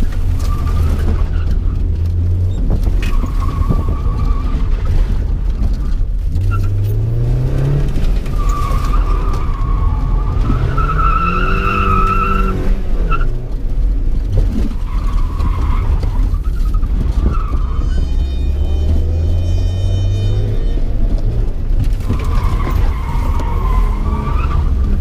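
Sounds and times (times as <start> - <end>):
car engine revving: 6.4 - 25.0
tyres squealing: 8.3 - 13.3.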